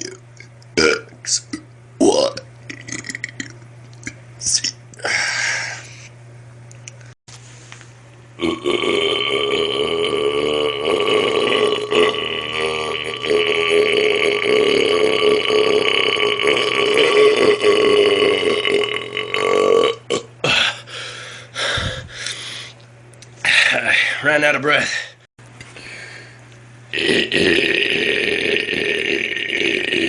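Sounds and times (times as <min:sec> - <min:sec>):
man belching: 0:00.0 - 0:00.2, 0:00.8 - 0:04.2, 0:08.4 - 0:20.8, 0:26.9 - 0:30.0
short breaths: 0:25.7 - 0:26.4.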